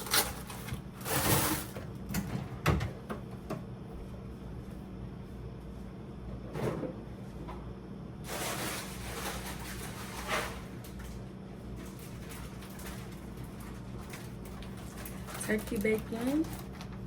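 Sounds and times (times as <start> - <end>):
groceries scraping and rustling: 0.0 - 1.8, 8.3 - 17.0.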